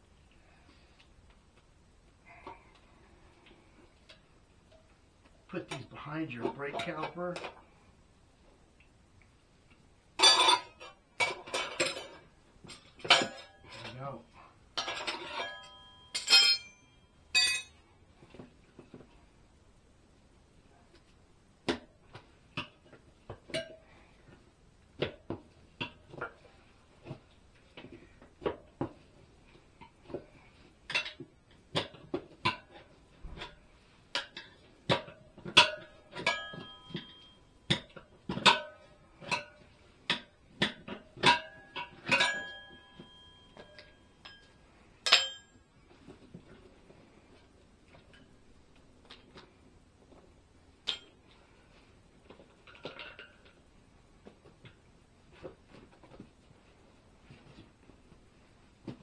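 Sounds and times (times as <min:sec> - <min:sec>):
metal tools knocking on wheel: 0:14.8 - 0:17.7.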